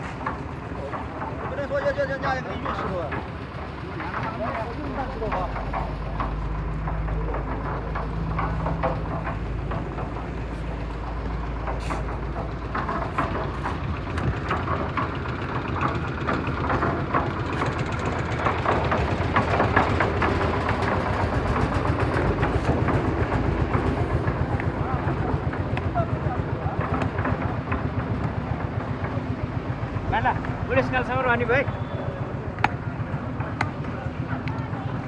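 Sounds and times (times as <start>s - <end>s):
diesel machinery engine rumble: 0.0s - 35.0s
clattering and knocking: 3.9s - 24.4s.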